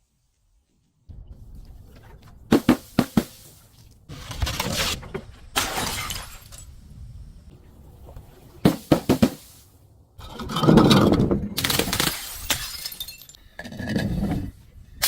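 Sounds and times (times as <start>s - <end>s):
glass shattering and crunching: 4.5s - 6.8s, 11.5s - 13.4s
glass cracking: 5.6s - 6.7s, 11.6s - 13.4s.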